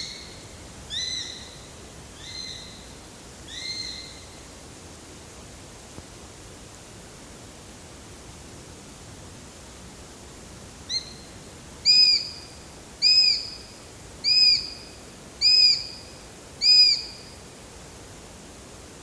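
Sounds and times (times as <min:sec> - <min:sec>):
sparrowhawk calling: 0:13.0 - 0:13.6, 0:14.2 - 0:14.8, 0:15.4 - 0:16.0.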